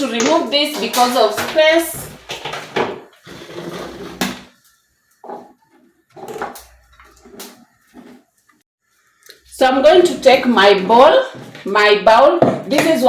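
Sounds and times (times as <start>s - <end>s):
kitchen items clattering on counter: 0.0s - 4.6s, 5.2s - 8.3s.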